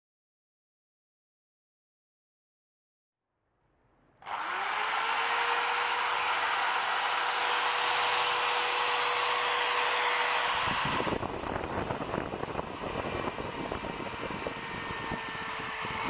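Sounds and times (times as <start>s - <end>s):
electric drill motor whining: 4.2s - 16.0s.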